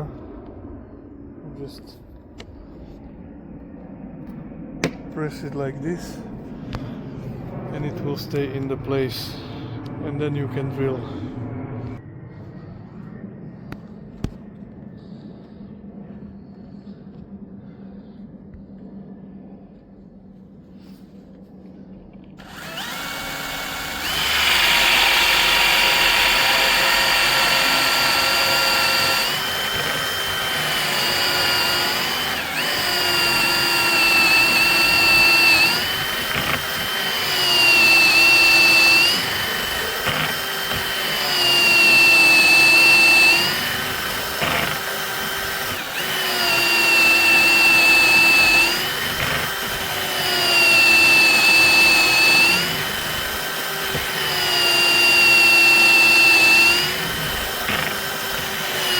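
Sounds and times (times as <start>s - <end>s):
electric drill whining: 22.4s - 58.9s.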